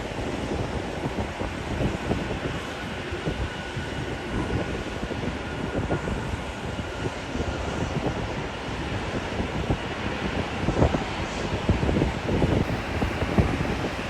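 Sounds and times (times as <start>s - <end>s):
wind buffeting microphone: 0.0s - 14.0s
faint high whine: 12.6s - 14.0s.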